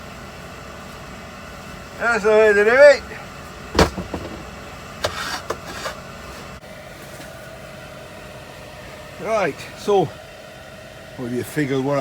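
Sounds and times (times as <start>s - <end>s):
background hum: 0.0s - 10.9s
metal scrap knocking: 3.8s - 5.9s
metal scraping on workbench: 3.8s - 6.5s.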